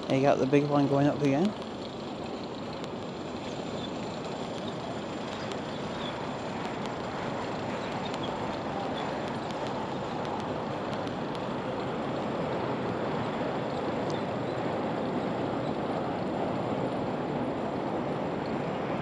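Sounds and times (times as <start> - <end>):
faint ticks: 1.5 - 12.3, 13.7 - 14.3.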